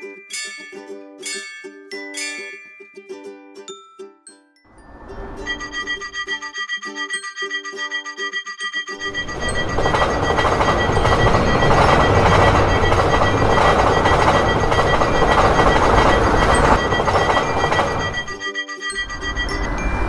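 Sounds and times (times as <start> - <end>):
crossing warning bell ringing: 4.7 - 20.0
train rushing rumble: 4.8 - 6.4, 9.0 - 18.4, 19.0 - 20.0.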